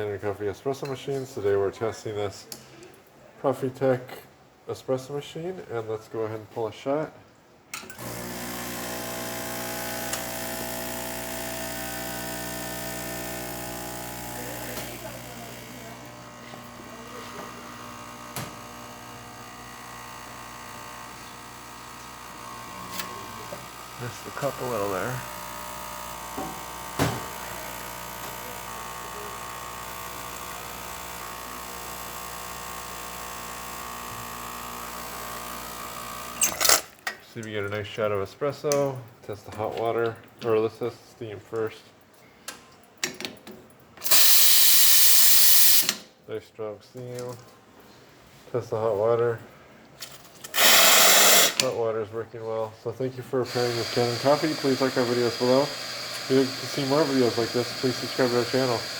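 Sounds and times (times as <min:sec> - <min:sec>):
espresso machine pump humming: 0:08.0 - 0:36.5, 0:44.0 - 0:45.9, 0:50.5 - 0:51.6, 0:53.4 - 0:58.9.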